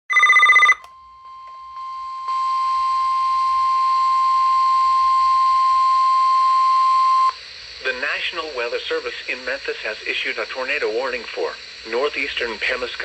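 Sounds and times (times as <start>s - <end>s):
steady warning alarm tone: 0.1s - 7.4s
radio hiss: 5.2s - 13.0s.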